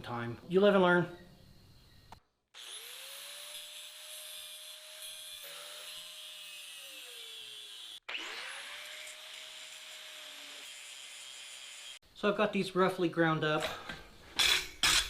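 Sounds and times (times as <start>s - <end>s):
electric grinder grinding steel: 2.6s - 12.0s.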